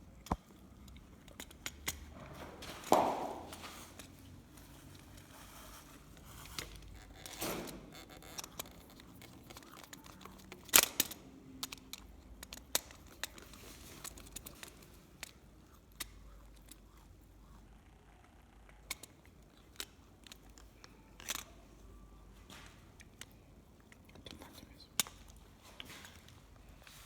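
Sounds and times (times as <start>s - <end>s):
clicks and snips of wiring work: 4.0s - 16.9s.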